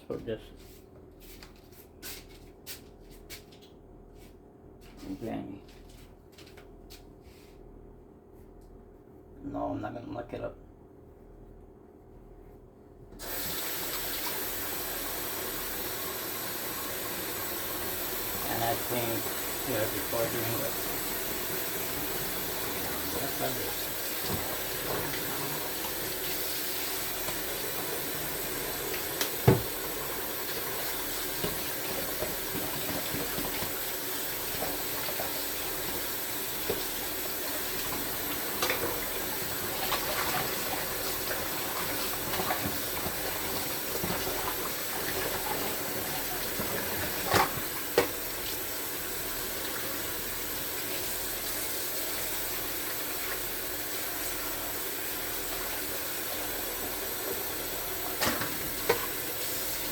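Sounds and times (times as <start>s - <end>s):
tap running into sink: 18.8s - 26.6s, 27.2s - 48.3s, 58.0s - 59.3s.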